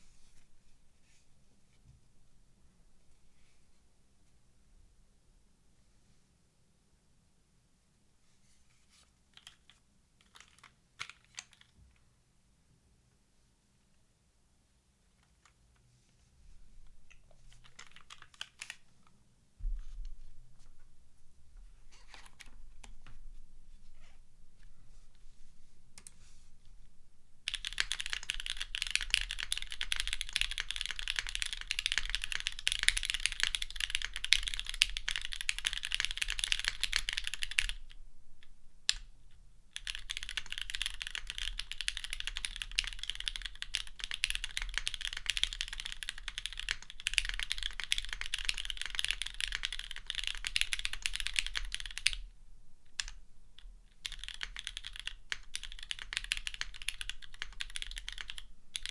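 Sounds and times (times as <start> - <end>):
typing on mechanical keyboard: 9.3 - 11.8, 17.1 - 18.9, 27.5 - 37.9, 39.8 - 52.3, 54.0 - 58.9.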